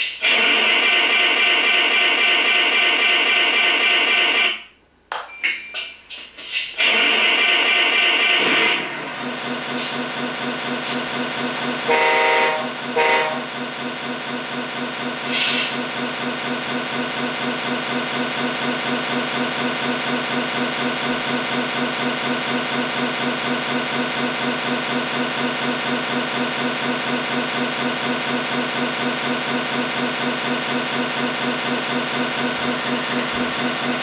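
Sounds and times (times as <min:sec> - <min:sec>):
truck horn toots: 0:11.8 - 0:13.5.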